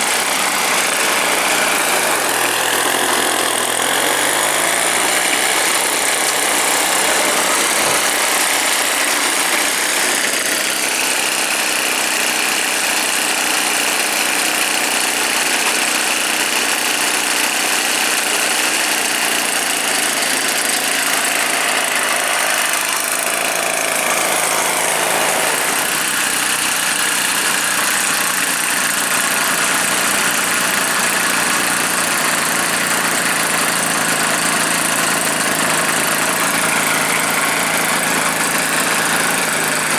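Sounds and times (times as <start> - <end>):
two-stroke engine running: 0.0 - 39.9.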